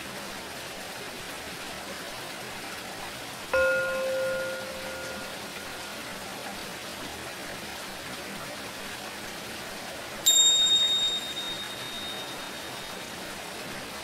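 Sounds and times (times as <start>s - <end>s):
singing bowl ringing: 3.6s - 6.4s, 10.2s - 13.5s
small cymbals ringing: 3.6s - 6.5s, 10.2s - 13.6s.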